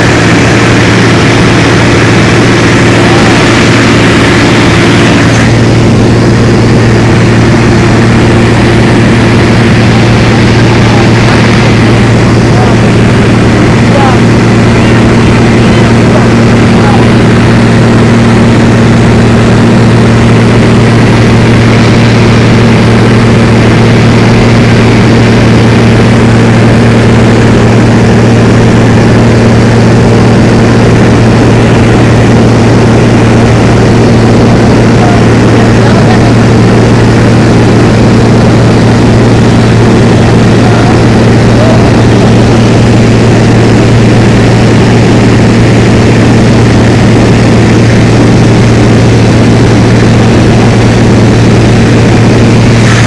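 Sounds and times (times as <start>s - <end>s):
constant rushing noise: 0.0s - 53.0s
engine drone: 0.0s - 53.0s.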